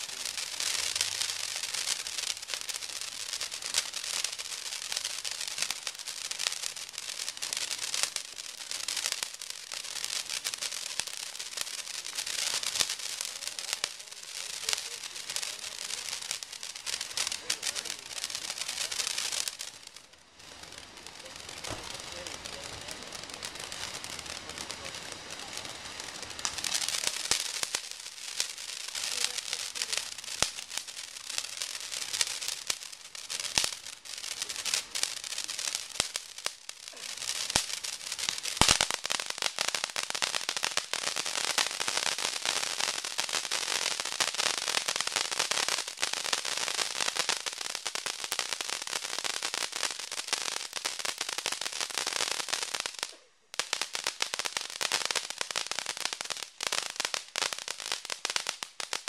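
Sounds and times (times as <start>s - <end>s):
firework bangs: 0.0s - 59.0s
firework crackling: 0.0s - 59.0s.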